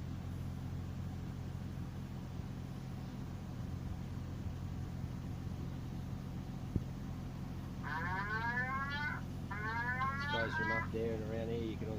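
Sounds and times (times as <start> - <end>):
low droning hum: 5.1 - 11.8.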